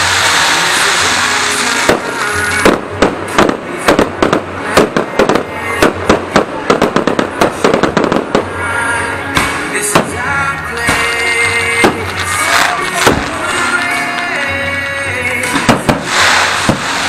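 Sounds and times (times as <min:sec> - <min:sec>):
fireworks bursting with sharp bangs: 0:00.0 - 0:17.0.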